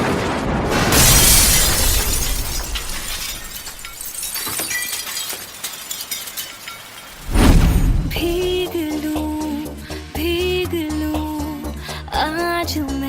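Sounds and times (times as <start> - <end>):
loud crash: 0.0 - 8.8.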